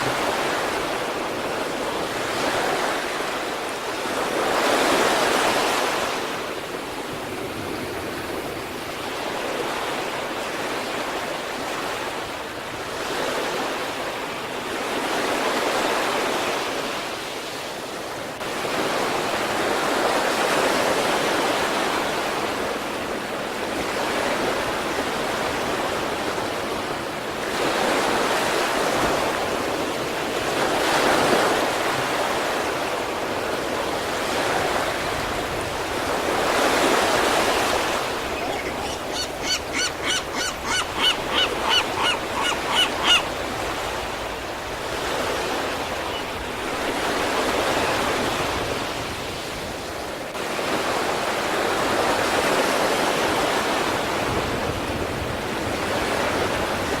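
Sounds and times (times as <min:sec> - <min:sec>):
sea waves breaking on shore: 0:00.0 - 0:57.0
bird calling: 0:37.4 - 0:44.4.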